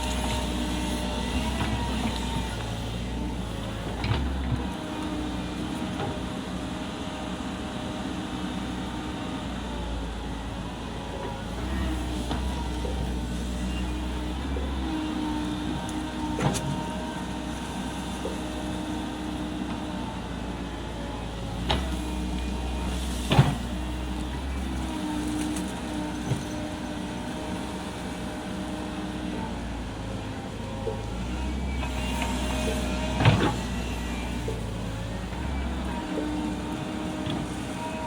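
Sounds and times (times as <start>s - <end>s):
hydraulic whine: 0.0s - 6.2s, 9.7s - 38.0s
excavator diesel hum: 0.0s - 38.0s.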